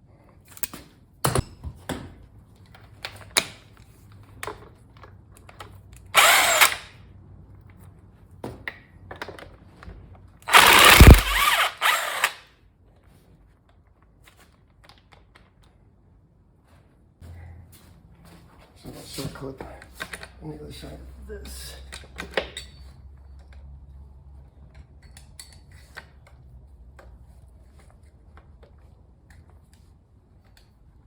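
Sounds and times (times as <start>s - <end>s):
power driver spinning bolts: 6.2s - 6.8s, 10.5s - 12.4s.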